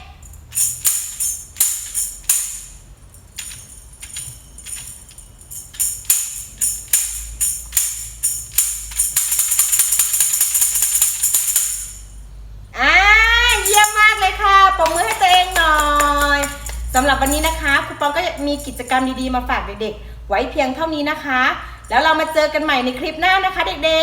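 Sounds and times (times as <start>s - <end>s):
tambourine taps and roll: 0.4s - 12.2s, 13.5s - 17.6s.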